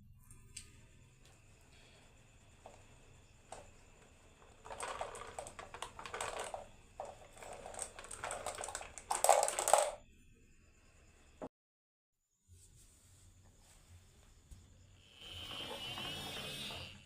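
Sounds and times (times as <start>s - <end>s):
marbles rattling down wooden run: 2.6s - 10.0s.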